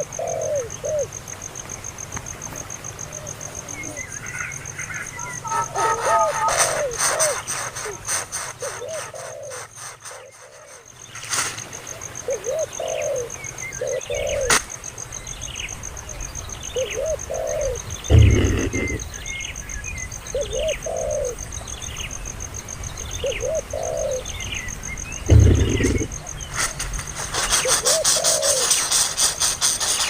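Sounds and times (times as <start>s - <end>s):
bird cooing: 0.0s - 1.2s, 4.9s - 10.9s, 12.2s - 14.6s, 16.8s - 19.2s, 20.3s - 21.4s, 23.2s - 24.3s, 25.3s - 26.3s, 27.5s - 29.0s
heavy thump: 18.1s - 19.0s, 25.3s - 26.1s
short bird chirps: 18.1s - 19.3s, 25.2s - 26.6s.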